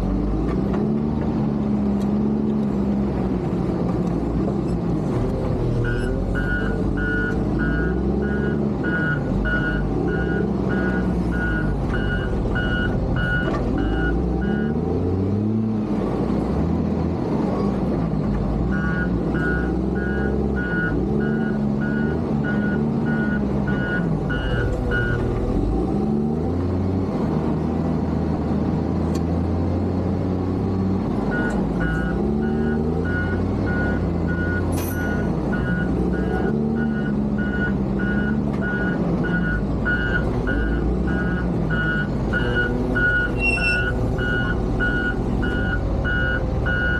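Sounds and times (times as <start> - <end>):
diesel engine running: 0.0 - 46.9
reversing alarm beeping: 5.8 - 14.8, 18.7 - 25.2, 31.3 - 46.9.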